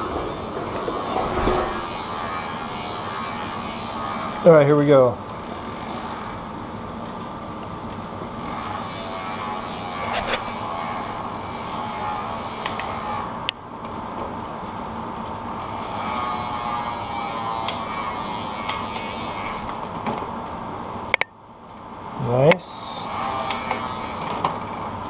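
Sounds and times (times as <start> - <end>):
bicycle chain running over cassette: 0.0 - 7.0, 15.5 - 19.7.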